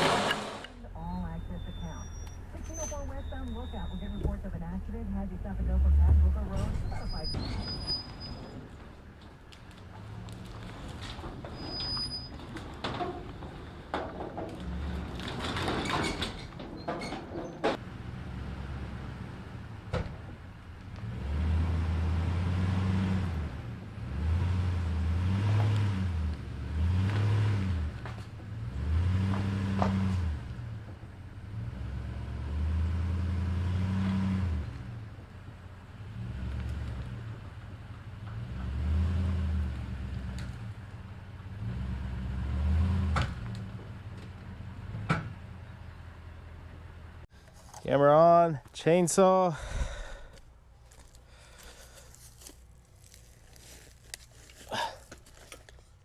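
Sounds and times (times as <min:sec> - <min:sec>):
vehicle engine revving low: 0:00.0 - 0:07.3, 0:17.8 - 0:47.2.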